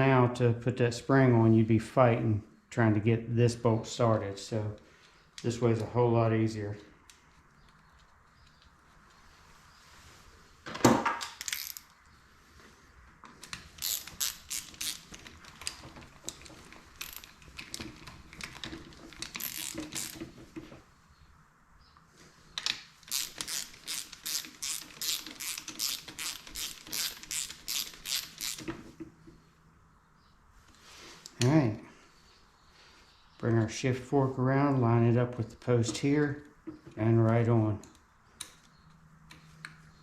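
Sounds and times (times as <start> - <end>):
hand ratchet clicking: 11.4 - 11.9, 13.8 - 15.4, 17.0 - 17.3, 19.2 - 20.3, 23.0 - 28.7.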